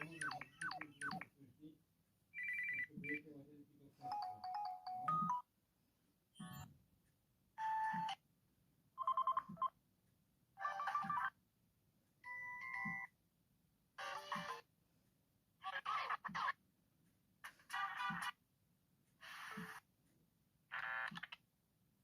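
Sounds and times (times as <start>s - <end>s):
mobile phone ringtone melodies: 4.0s - 5.5s.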